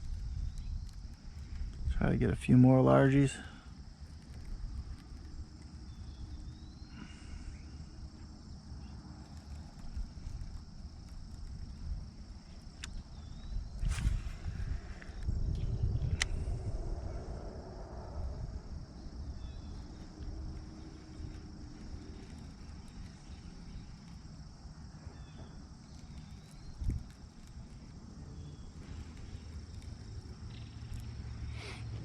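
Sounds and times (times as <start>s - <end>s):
high-pitched insect drone: 2.9s - 32.0s
low rumble: 13.4s - 24.0s.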